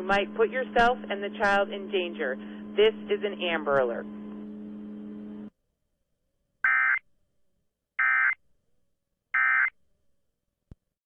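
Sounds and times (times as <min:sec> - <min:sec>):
steady background hum: 0:00.0 - 0:05.5.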